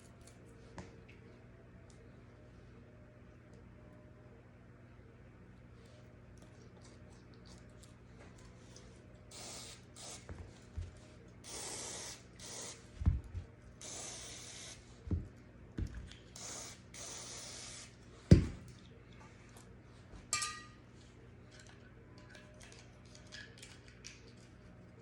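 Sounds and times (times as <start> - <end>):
aerosol spray can hissing: 9.3 - 10.3, 11.4 - 12.8, 13.8 - 14.8, 16.4 - 17.9
metallic clink: 20.3 - 20.8.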